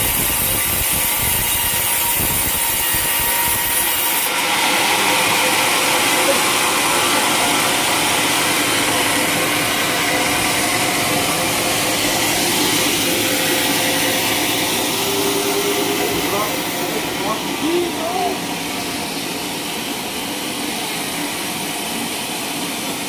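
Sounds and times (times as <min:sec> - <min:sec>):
sawmill saw cutting wood: 0:00.0 - 0:22.3.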